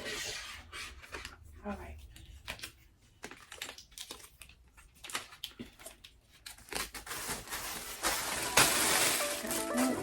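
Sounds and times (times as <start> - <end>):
crinkling crumpling noise: 2.0 - 10.0.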